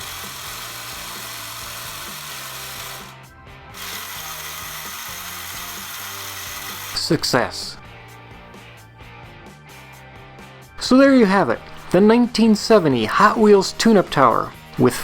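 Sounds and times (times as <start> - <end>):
toy elevator gear noise: 0.0 - 7.1.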